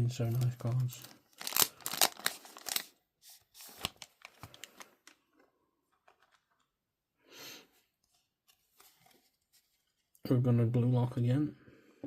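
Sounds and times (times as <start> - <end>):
cards rustling and clicking: 0.3 - 5.2, 5.9 - 6.7.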